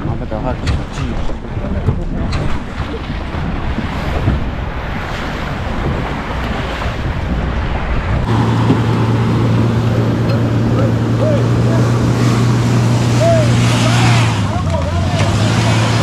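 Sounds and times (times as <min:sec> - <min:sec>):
wind buffeting microphone: 0:00.0 - 0:16.0
vehicle engine droning: 0:08.2 - 0:16.0.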